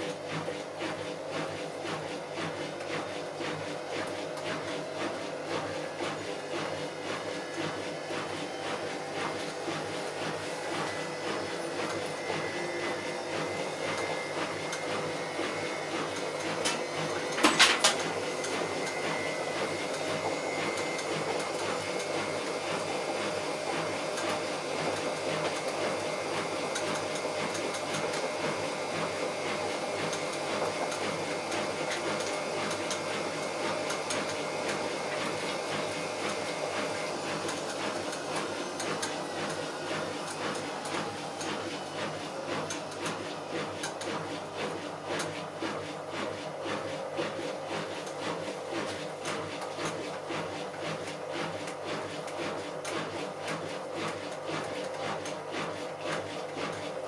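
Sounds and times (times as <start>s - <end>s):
washing machine drum turning: 2.5s - 45.4s.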